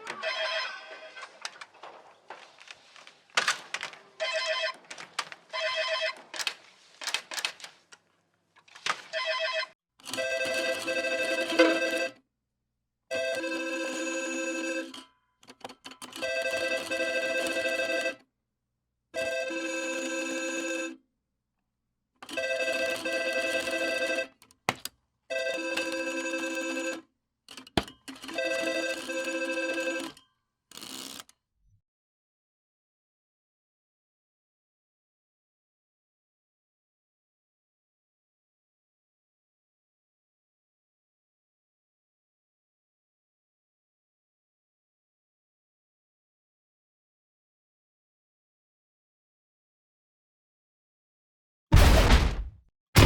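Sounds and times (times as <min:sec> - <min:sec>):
electronic telephone ringing: 0:00.0 - 0:01.2, 0:04.2 - 0:04.8, 0:05.6 - 0:06.2, 0:09.2 - 0:12.2, 0:13.1 - 0:15.1, 0:16.1 - 0:18.2, 0:19.2 - 0:21.0, 0:22.2 - 0:24.4, 0:25.3 - 0:27.0, 0:28.1 - 0:30.2
sharp knocks: 0:51.8 - 0:53.0.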